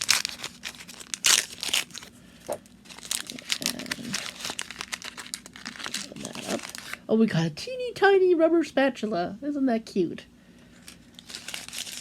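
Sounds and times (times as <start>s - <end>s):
plastic packaging crinkling: 0.0s - 7.0s, 10.8s - 12.0s.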